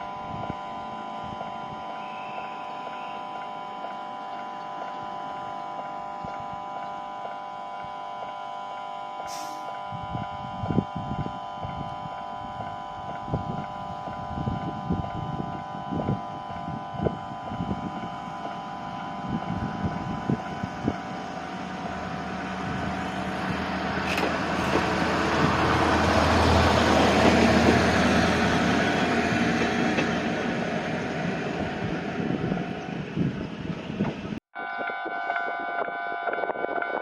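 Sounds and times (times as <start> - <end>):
level-crossing alarm ringing: 0.0 - 23.1, 34.6 - 37.0
higher crossing alarm tones: 0.0 - 32.2, 34.5 - 37.0
diesel railcar rumble: 0.0 - 37.0.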